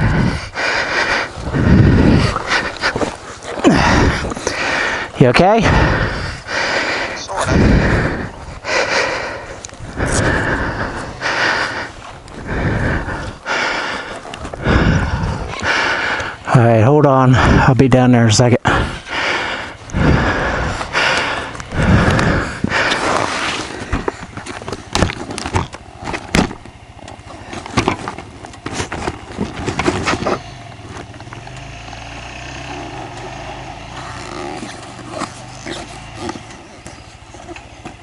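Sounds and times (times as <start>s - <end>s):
dirt bike engine idling: 0.0s - 38.0s
dirt bike clattering over rocks: 23.7s - 31.6s.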